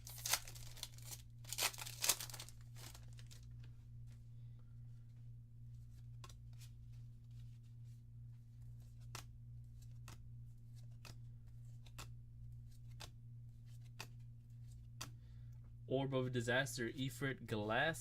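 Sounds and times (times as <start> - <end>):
cards snapping: 0.0 - 3.4, 8.9 - 15.2
low electrical hum: 0.0 - 18.0.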